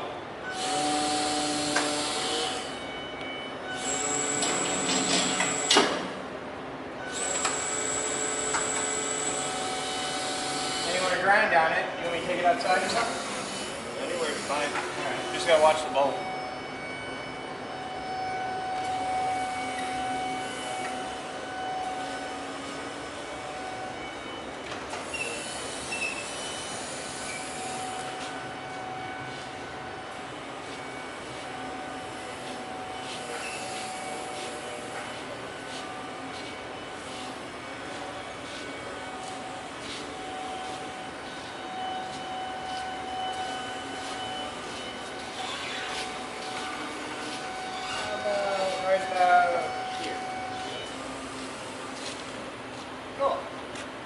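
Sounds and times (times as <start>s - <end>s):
forklift lift whine: 0.0s - 54.0s
faint steady tones: 6.9s - 52.0s
high squeaks: 25.0s - 28.2s, 33.0s - 34.2s, 41.2s - 51.0s.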